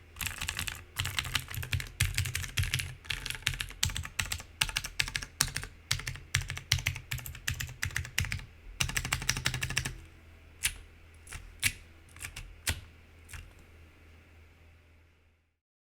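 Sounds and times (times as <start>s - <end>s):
mechanical keyboard typing: 0.2s - 10.0s, 10.6s - 13.6s.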